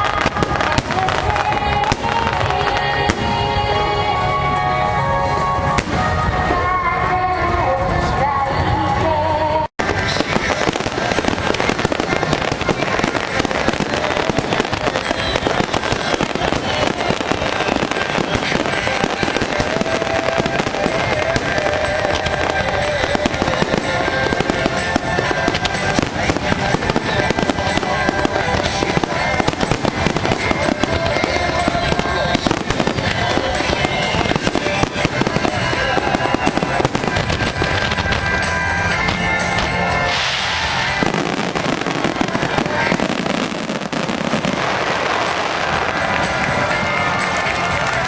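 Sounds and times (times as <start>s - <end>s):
fireworks bursting and crackling: 0.0s - 9.2s, 9.8s - 48.0s
music playing: 0.0s - 48.0s.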